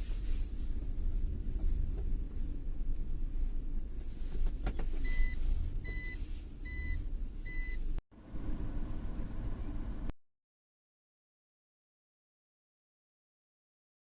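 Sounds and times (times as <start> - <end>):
steady low rumble: 0.0 - 10.1.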